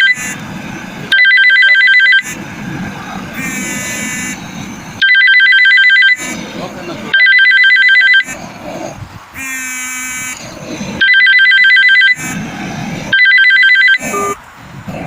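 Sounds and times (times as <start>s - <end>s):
electronic telephone ringtone: 0.0s - 0.2s, 1.1s - 2.3s, 5.0s - 6.2s, 7.1s - 8.4s, 11.0s - 12.2s, 13.1s - 14.4s
short electronic tones: 0.0s - 0.4s, 1.1s - 2.4s, 3.4s - 4.4s, 5.0s - 6.4s, 7.1s - 8.4s, 9.4s - 10.4s, 11.0s - 12.4s, 13.1s - 14.4s.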